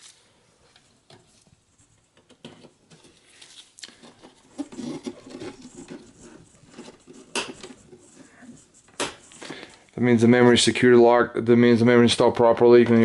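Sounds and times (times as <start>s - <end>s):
plastic and metal handling: 0.0s - 10.0s.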